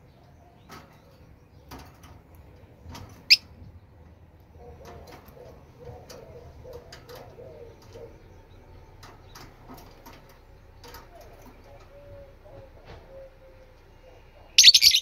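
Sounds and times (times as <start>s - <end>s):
bird's low wavering calls: 11.2s - 15.0s.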